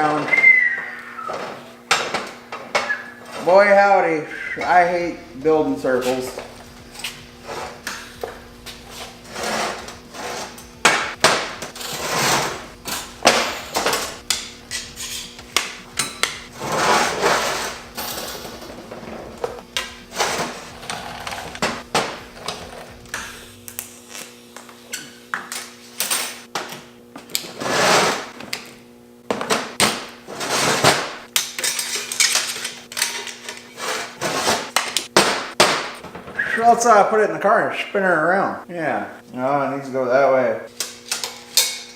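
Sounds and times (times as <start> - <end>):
hammer striking steel tube: 15.6 - 16.5.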